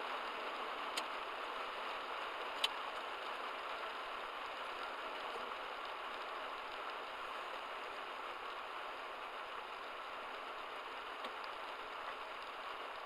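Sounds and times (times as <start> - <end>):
heavy rain on a car: 0.0 - 13.0
raindrops ticking: 0.1 - 13.0.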